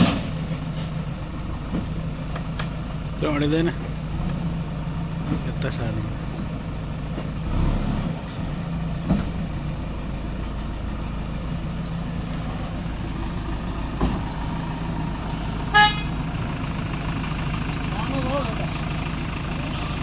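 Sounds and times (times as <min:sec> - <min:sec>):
heavy diesel engine running: 0:00.0 - 0:20.0
vehicle horn toot: 0:15.7 - 0:16.2.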